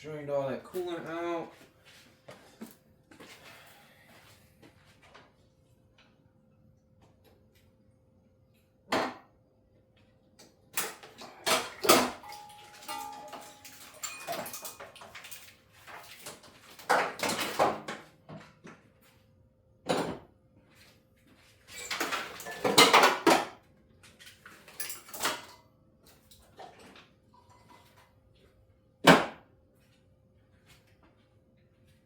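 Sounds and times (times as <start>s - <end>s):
metal tools clanking and rattling: 11.5s - 17.8s, 21.7s - 23.4s, 24.5s - 25.5s.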